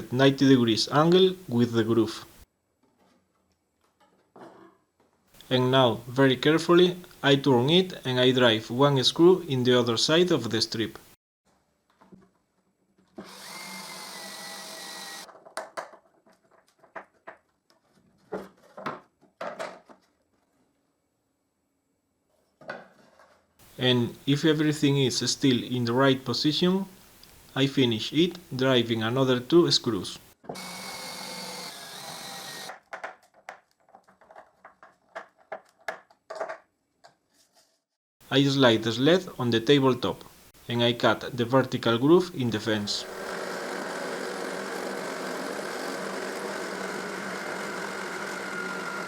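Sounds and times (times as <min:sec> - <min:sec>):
power drill driving screw: 0:13.2 - 0:15.3, 0:30.6 - 0:32.8, 0:43.0 - 0:49.0
wood and tools clicking and knocking: 0:15.3 - 0:20.3, 0:32.6 - 0:37.2.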